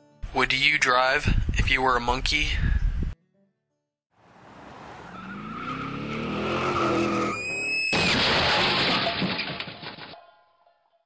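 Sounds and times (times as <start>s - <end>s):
car engine revving: 4.2s - 7.4s
tires squealing: 4.2s - 9.0s
loud crash: 7.2s - 10.2s.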